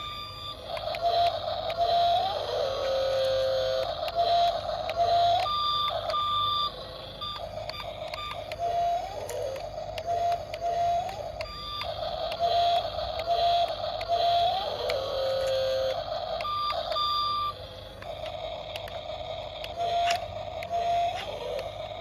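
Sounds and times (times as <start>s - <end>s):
small electric motors whining: 0.0s - 22.0s
scattered clicks: 0.5s - 22.0s
short electronic beeps: 10.1s - 14.6s, 15.3s - 17.6s.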